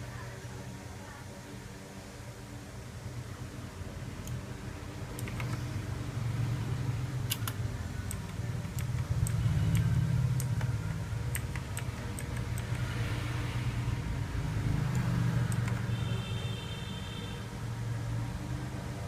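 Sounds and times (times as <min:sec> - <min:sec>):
clicky keyboard keys pressed: 0:05.1 - 0:05.6, 0:07.3 - 0:12.9, 0:14.9 - 0:15.9.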